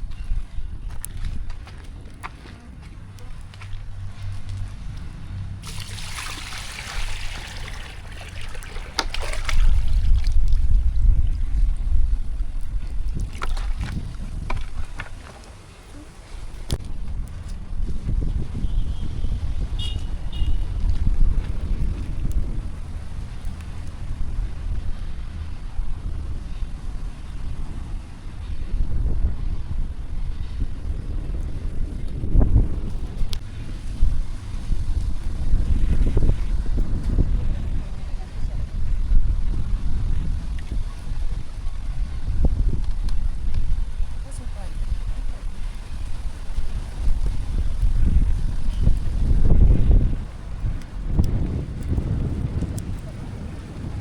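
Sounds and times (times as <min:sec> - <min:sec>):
wind rumble on microphone: 0:00.0 - 0:54.0
water pouring and splashing: 0:05.6 - 0:16.9.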